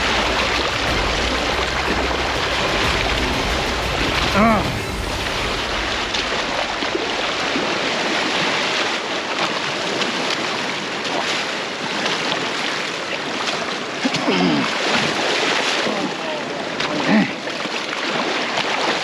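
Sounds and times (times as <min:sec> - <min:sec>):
surf washing onto beach: 0:00.0 - 0:14.0.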